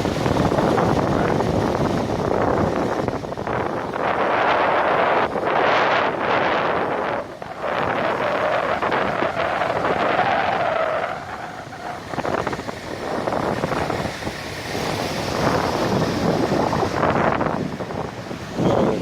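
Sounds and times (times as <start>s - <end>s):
road traffic rushing: 0.0s - 19.0s
waterfall: 0.0s - 19.0s
wind buffeting microphone: 0.0s - 19.0s.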